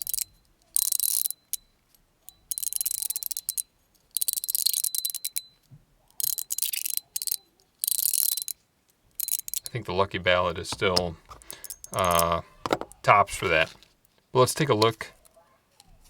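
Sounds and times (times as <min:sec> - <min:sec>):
fidget slider clicking: 0:00.0 - 0:01.4, 0:02.5 - 0:03.6, 0:04.2 - 0:05.4, 0:06.2 - 0:08.6, 0:09.2 - 0:09.8.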